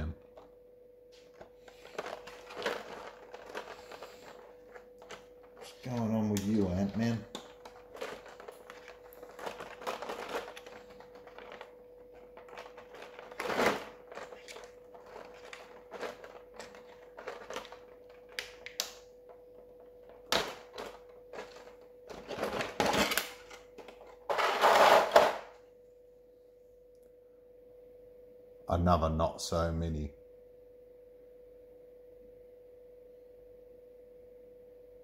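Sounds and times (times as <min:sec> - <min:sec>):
faint steady hum: 0:00.0 - 0:35.0
crinkling plastic: 0:01.2 - 0:25.5
plastic packaging clicks and rustling: 0:01.2 - 0:25.5.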